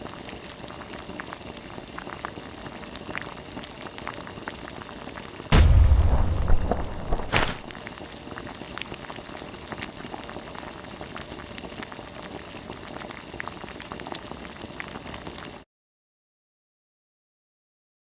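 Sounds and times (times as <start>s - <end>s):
crackling hiss with sharp pops: 0.0s - 15.6s
eruption burst: 5.5s - 7.7s.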